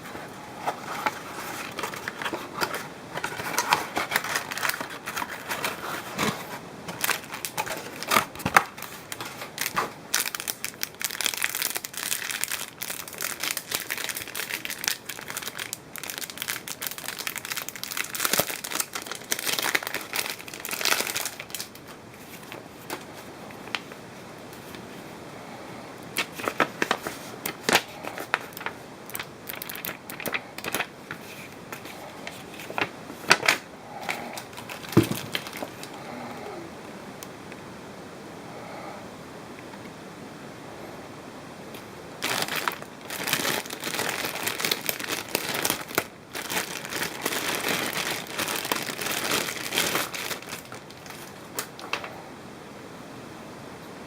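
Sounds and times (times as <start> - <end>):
plastic crinkling and rustling: 0.0 - 25.1, 26.1 - 36.1, 41.7 - 52.2.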